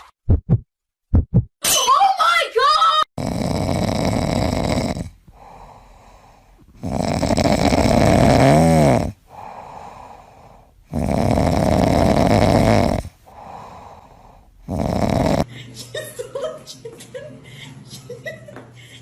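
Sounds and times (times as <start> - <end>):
loud rasping snoring: 3.2 - 15.5.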